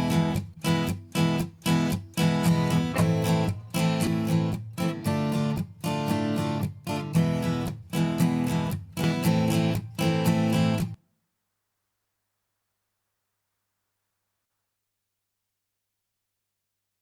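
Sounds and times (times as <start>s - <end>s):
strummed guitar chords: 0.0s - 10.9s.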